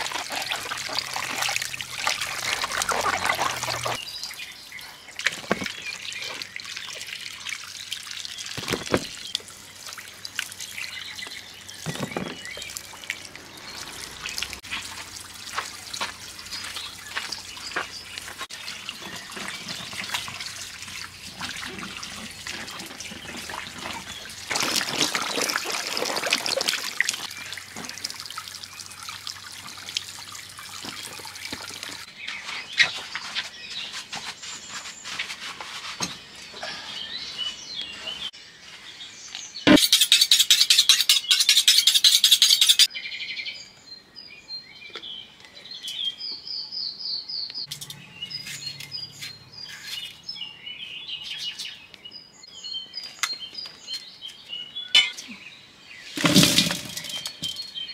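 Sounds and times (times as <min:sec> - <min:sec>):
running water rush: 0:00.0 - 0:04.0, 0:05.2 - 0:32.1
birds chirping: 0:00.0 - 0:07.1, 0:07.7 - 0:25.4, 0:30.3 - 0:35.4, 0:36.0 - 0:57.9
kitchen clatter: 0:56.2 - 0:57.7.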